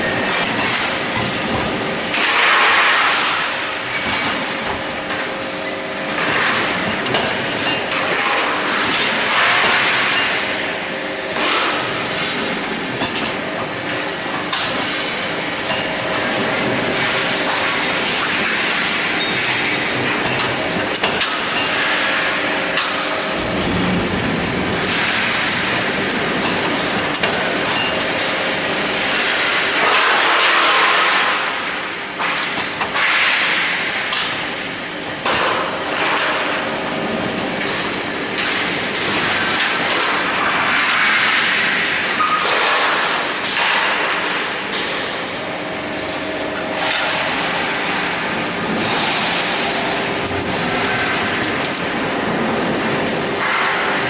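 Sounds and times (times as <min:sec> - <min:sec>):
industrial machine hum: 0:00.0 - 0:54.0
machine knocks: 0:23.2 - 0:27.7.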